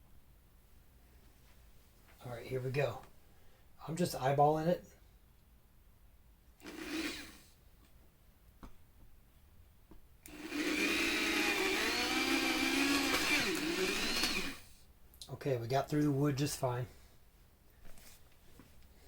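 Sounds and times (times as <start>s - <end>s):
electric drill boring through wood: 6.6s - 7.4s, 10.3s - 14.7s.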